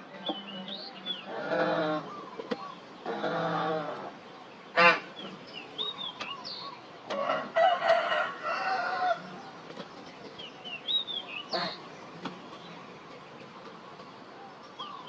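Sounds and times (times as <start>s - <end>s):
small birds chirping: 0.0s - 15.0s
rooster crowing: 7.1s - 9.4s.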